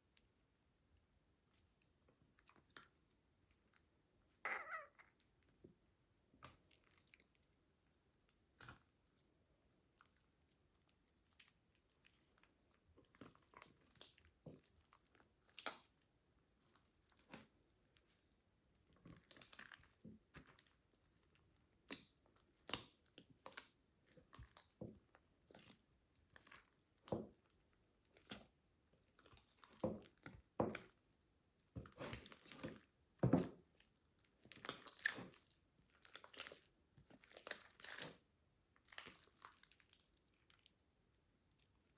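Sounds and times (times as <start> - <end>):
slime squished by hand: 31.7 - 40.6.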